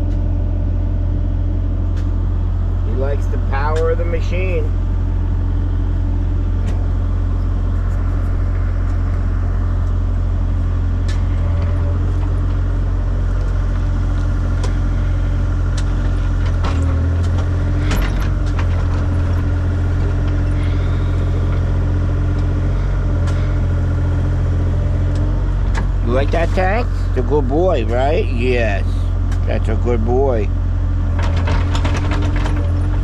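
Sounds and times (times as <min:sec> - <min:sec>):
excavator engine running: 0:00.0 - 0:33.0
sharp knocks and clanks: 0:31.2 - 0:33.0.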